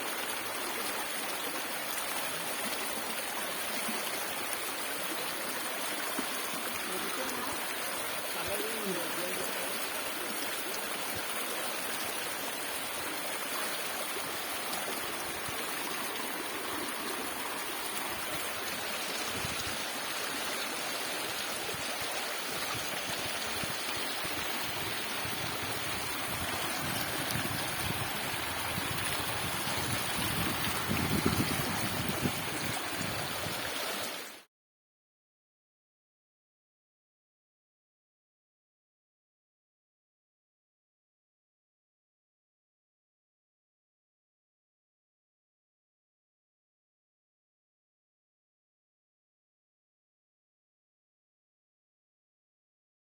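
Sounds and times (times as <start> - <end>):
waterfall rushing over rocks: 0.0 - 34.5.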